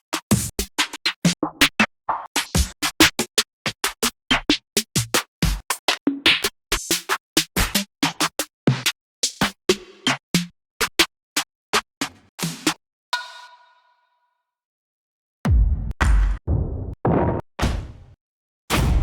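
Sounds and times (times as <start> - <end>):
electronic drum hits: 15.5 - 17.0.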